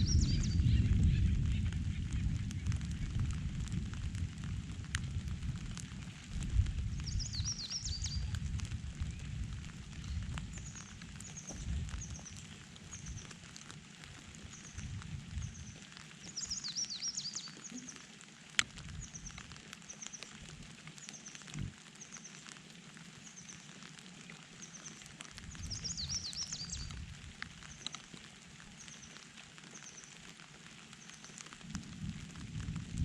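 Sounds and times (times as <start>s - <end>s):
songbird high chirp: 0.0s - 1.7s, 7.0s - 8.4s, 14.5s - 18.0s, 24.6s - 27.0s
bird warbled song: 0.0s - 3.1s, 7.0s - 8.4s, 14.5s - 18.0s, 24.6s - 27.0s
low rumbles: 0.0s - 13.3s, 21.5s - 21.8s
light rain pattering: 0.0s - 33.0s.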